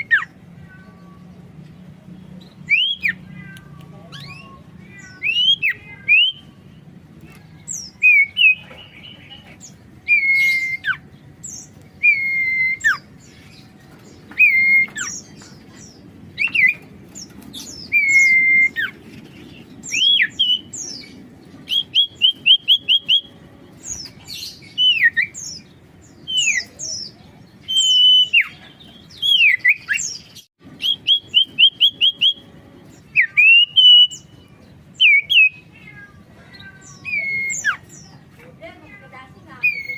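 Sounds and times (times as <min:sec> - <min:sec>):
bird singing whistled notes: 0:02.5 - 0:03.2, 0:04.1 - 0:06.6, 0:07.7 - 0:09.4, 0:10.0 - 0:13.6, 0:14.3 - 0:15.4, 0:17.6 - 0:19.0, 0:19.6 - 0:23.3, 0:24.0 - 0:35.7, 0:36.8 - 0:38.0.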